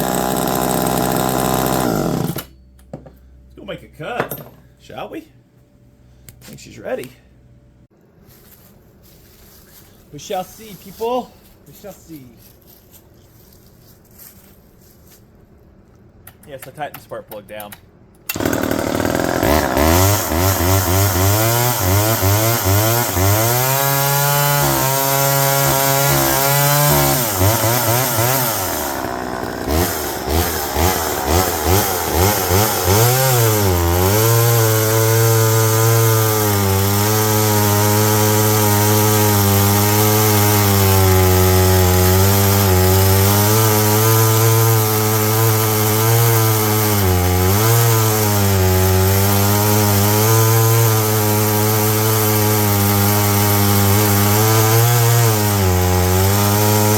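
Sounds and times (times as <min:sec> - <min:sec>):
chainsaw revving: 0:00.0 - 0:02.5, 0:18.3 - 0:56.9.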